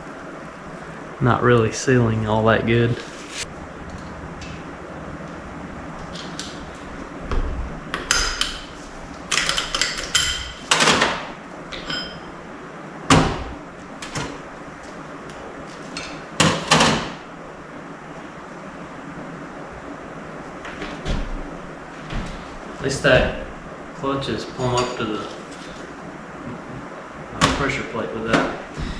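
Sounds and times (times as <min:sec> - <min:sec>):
metal parts clinking: 0:09.3 - 0:10.7.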